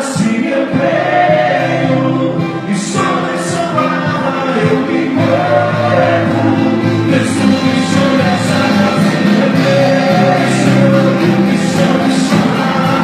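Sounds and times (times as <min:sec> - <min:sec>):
church band worship music: 0:00.0 - 0:13.0
person singing: 0:00.0 - 0:13.0.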